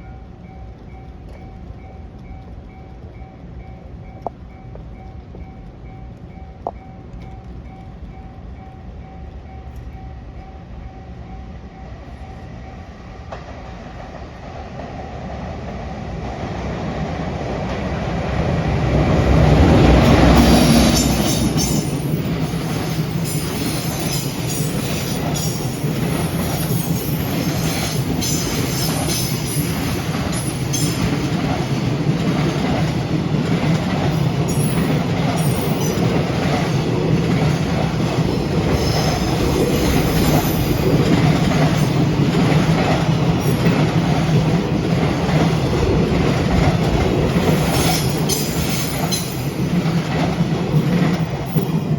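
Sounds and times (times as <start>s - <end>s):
locomotive rumble: 15.4s - 51.9s.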